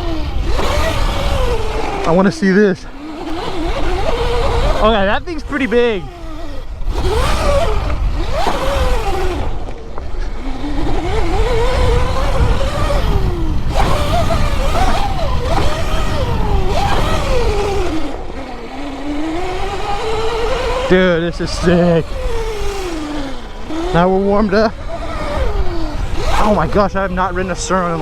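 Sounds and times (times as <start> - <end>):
electric motor whining: 0.0 - 28.0.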